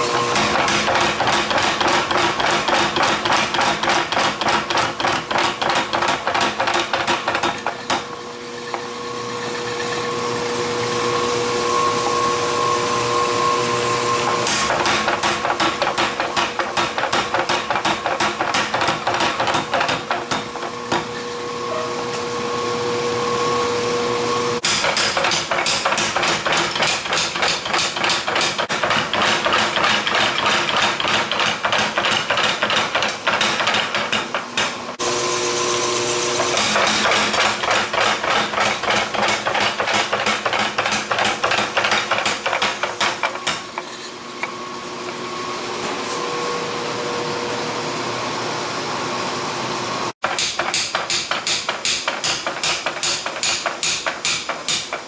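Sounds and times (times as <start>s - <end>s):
power hammer pounding steel: 0.2s - 8.2s, 14.3s - 21.2s, 24.6s - 35.0s, 36.3s - 43.8s, 50.2s - 55.0s.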